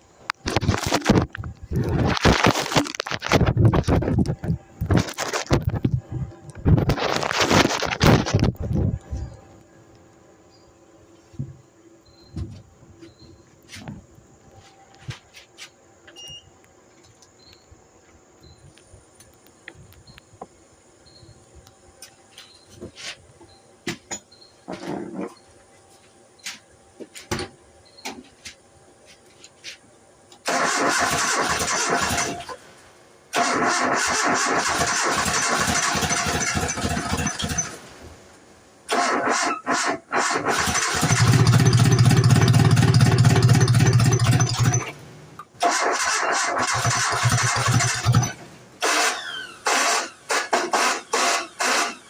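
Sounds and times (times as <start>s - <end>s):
starter cranking engine: 30.5s - 32.5s, 33.4s - 37.8s, 38.9s - 44.9s, 45.6s - 52.0s.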